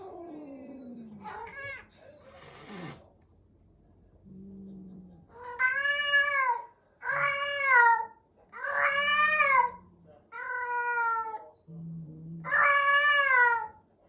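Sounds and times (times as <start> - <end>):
cat growling: 0.0 - 3.0, 4.2 - 13.8
cat yowling: 1.2 - 1.9, 5.4 - 11.5, 12.4 - 13.8.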